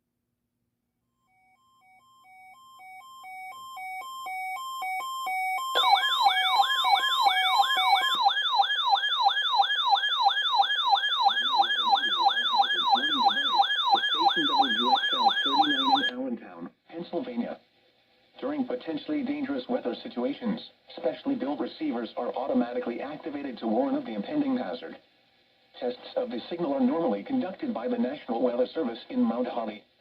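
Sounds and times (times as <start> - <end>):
hi-lo siren tone: 1.3 - 16.1
siren yelp: 1.5 - 16.1.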